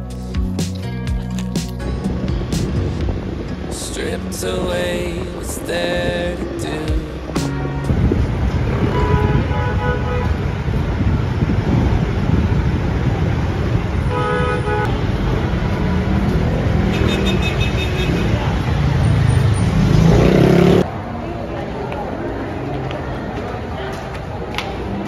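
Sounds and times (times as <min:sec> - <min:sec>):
road traffic rumble: 0:00.0 - 0:25.0
car horns tooting: 0:07.3 - 0:10.6, 0:14.0 - 0:15.0, 0:16.8 - 0:18.6.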